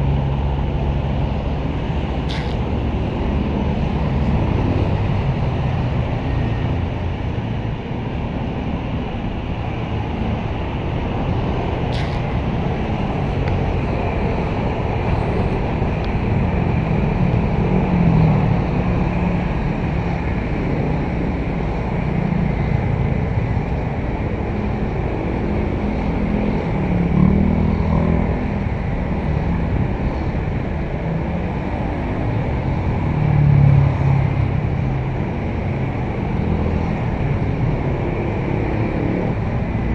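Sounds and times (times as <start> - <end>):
excavator diesel engine: 0.0 - 39.9.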